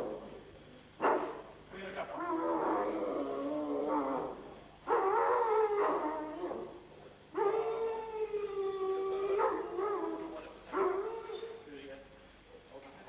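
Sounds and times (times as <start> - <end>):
dog howling whines: 2.2 - 6.7, 7.4 - 11.6.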